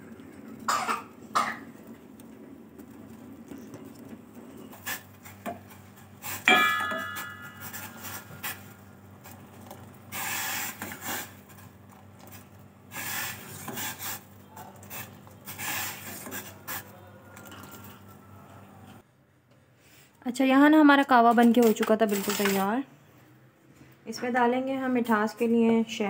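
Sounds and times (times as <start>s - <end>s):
utensil clink ringing: 6.5s - 8.3s
utensil scraping strokes: 12.9s - 17.0s.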